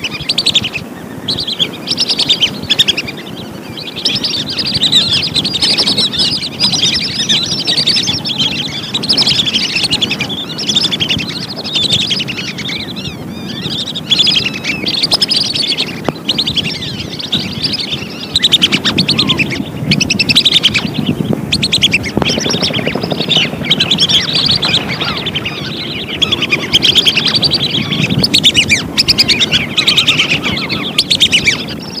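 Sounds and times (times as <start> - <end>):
whistling ducks calling: 0.0 - 32.0.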